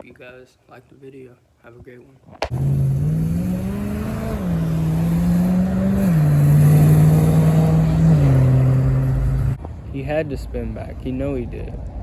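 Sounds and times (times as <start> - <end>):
car accelerating through gears: 2.5 - 9.6.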